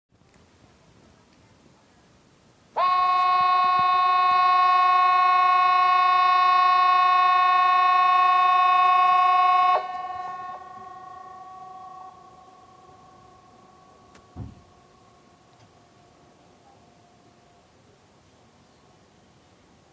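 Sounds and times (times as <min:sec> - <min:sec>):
warning siren harsh tone: 0:02.8 - 0:17.6.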